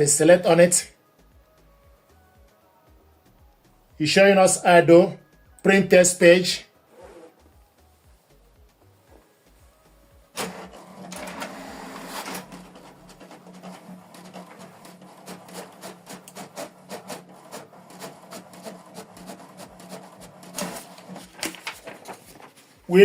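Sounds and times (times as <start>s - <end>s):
inkjet printer printing: 10.4s - 22.7s.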